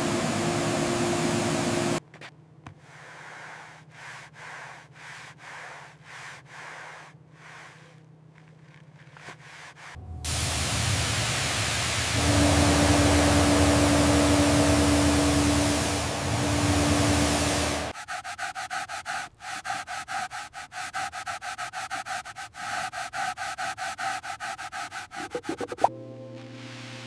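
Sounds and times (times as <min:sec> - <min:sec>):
steady hum: 0:10.0 - 0:17.9
hissing machine: 0:10.2 - 0:17.9
rhythmic rubbing strokes: 0:12.2 - 0:25.9.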